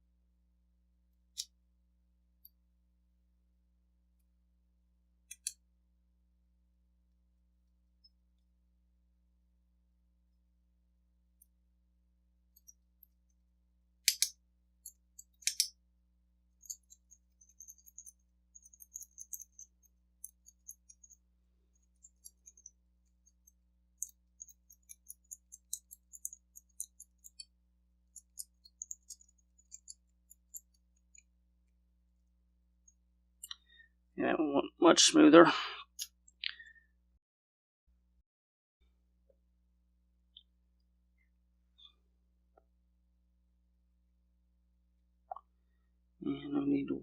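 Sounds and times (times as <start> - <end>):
metal tools ticking and scraping: 14.1 - 15.7, 16.6 - 27.5, 28.1 - 31.3
sharp metallic clicks: 14.1 - 15.7.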